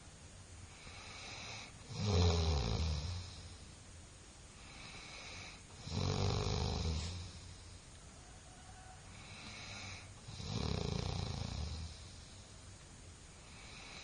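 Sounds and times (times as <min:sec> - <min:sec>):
person snoring: 0:00.7 - 0:03.6, 0:04.6 - 0:07.6, 0:09.1 - 0:12.4, 0:13.4 - 0:14.0.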